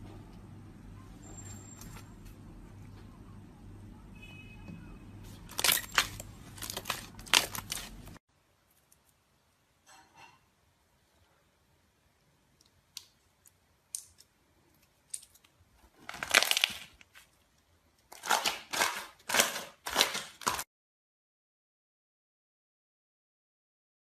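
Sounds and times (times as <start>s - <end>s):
slime squishing crackly: 5.3s - 8.2s, 15.9s - 17.3s, 18.1s - 20.6s.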